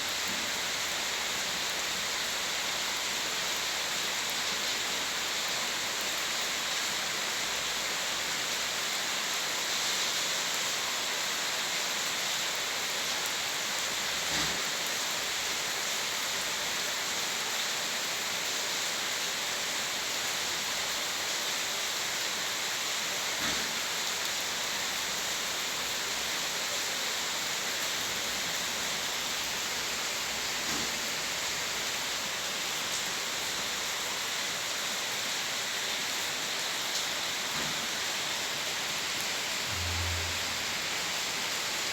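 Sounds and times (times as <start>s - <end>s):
steady rain: 0.0s - 41.9s.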